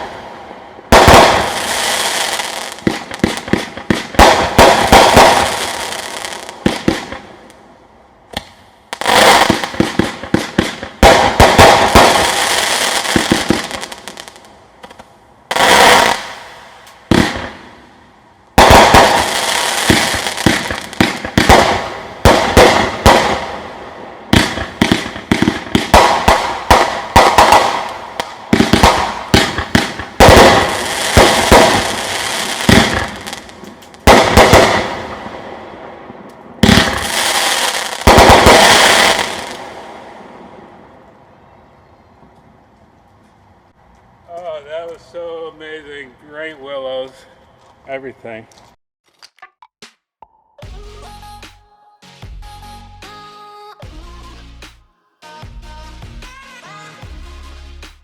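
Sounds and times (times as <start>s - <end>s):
fireworks firing volleys: 0.0s - 7.6s, 8.3s - 40.9s.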